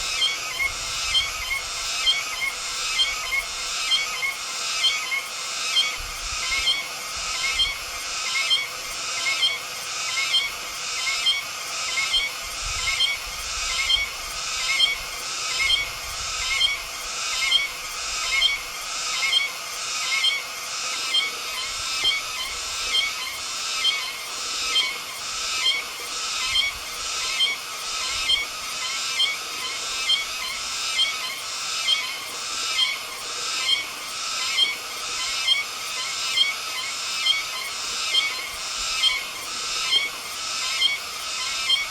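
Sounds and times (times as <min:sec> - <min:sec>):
cicada buzzing song: 0:00.0 - 0:41.9.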